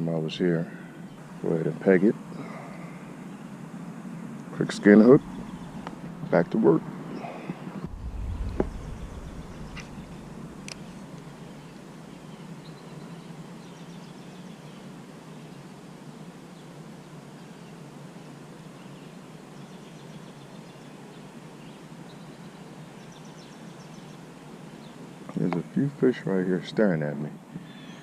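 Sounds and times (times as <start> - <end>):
faint bird chirps: 5.0 - 6.0, 7.1 - 14.9, 27.6 - 28.0
low background rumble: 5.1 - 6.4, 7.8 - 12.3.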